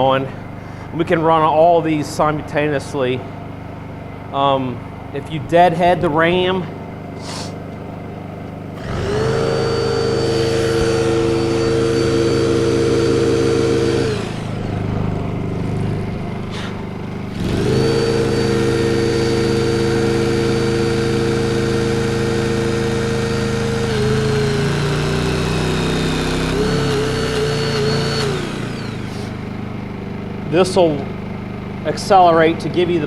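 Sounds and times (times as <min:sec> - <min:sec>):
generator engine revving: 0:00.0 - 0:33.0
hydraulic tool motor: 0:07.0 - 0:32.7.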